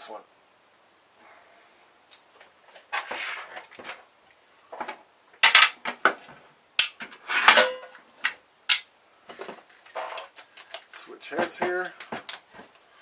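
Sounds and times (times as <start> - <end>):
metallic ring: 7.6 - 8.0.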